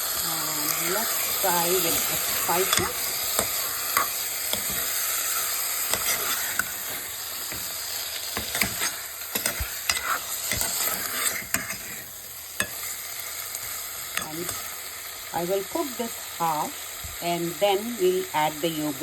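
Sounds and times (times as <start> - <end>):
meat sizzling in oil: 0.0 - 19.0
spoon stirring in a pot: 0.6 - 13.0.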